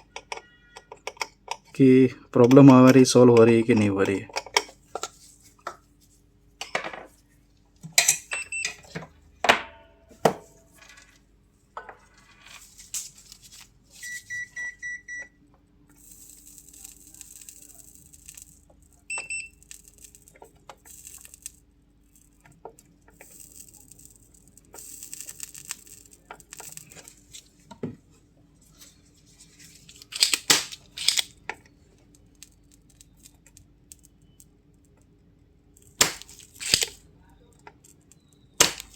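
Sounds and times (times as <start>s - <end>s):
tools clicking and knocking: 0.0s - 1.8s, 2.4s - 5.8s, 6.6s - 7.1s, 29.9s - 31.7s, 35.9s - 37.0s.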